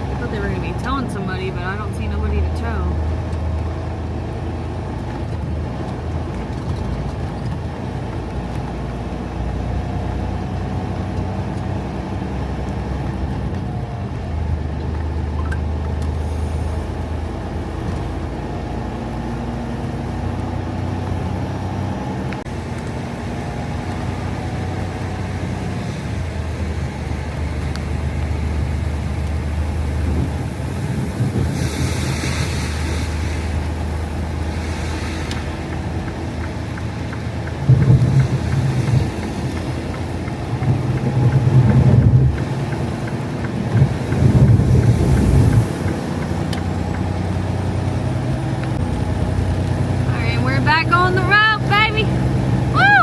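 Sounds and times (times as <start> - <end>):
truck diesel engine idling: 32.6 - 52.7.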